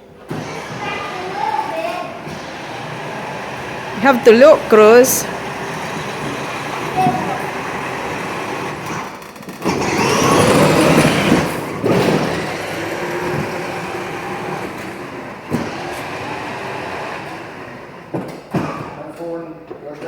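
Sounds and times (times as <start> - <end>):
toy car electric motor whirring: 0.3 - 19.1.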